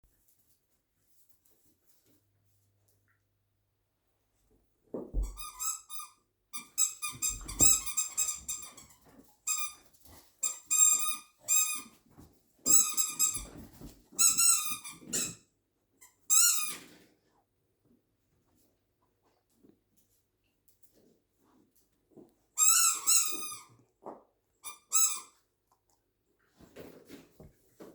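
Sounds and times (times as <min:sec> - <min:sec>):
squeaky toy squeaking: 0:05.2 - 0:09.8, 0:10.4 - 0:11.9, 0:12.7 - 0:13.6, 0:14.2 - 0:15.4, 0:16.3 - 0:16.8, 0:22.6 - 0:23.7, 0:24.6 - 0:25.4.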